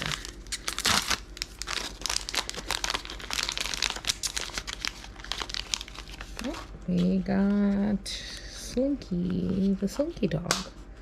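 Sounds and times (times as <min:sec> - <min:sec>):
plastic packaging crinkling and tearing: 0:00.0 - 0:07.2.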